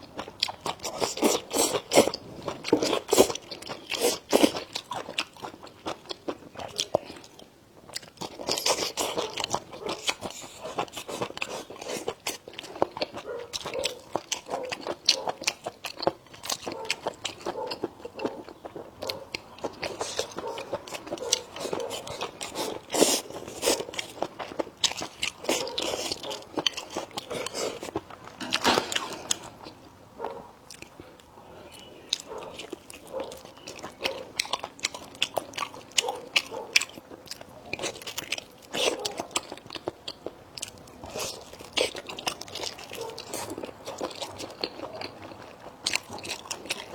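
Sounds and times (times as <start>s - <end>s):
person chewing crunchy food: 0.0s - 46.9s.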